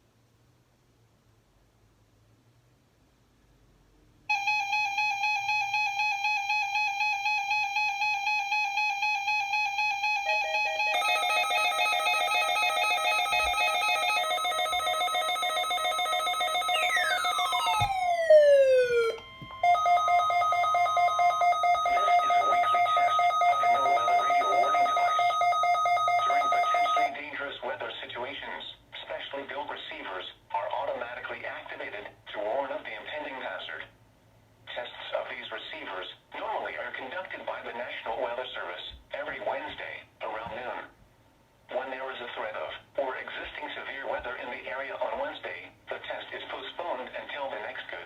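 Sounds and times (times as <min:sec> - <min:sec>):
pulsing electronic alarm tones: 0:04.3 - 0:27.2.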